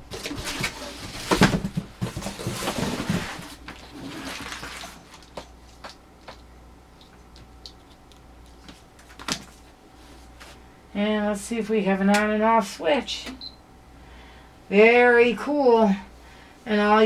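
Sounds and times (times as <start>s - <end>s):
rustling handling noise: 0.0s - 10.7s.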